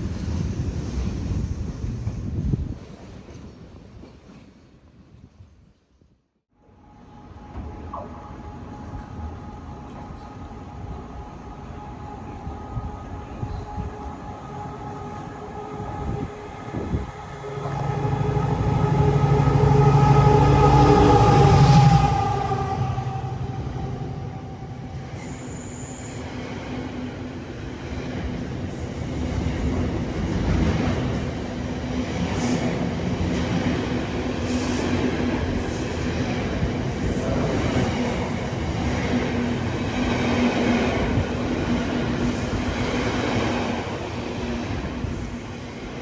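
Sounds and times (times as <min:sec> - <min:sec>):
train rumbling on rails: 0:00.0 - 0:05.4, 0:06.6 - 0:46.0
high wheel squeals: 0:16.7 - 0:26.6.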